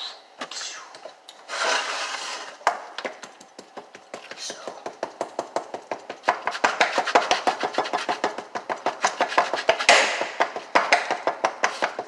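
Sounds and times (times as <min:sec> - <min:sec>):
utensil tapping on hard surface: 0:03.0 - 0:12.0.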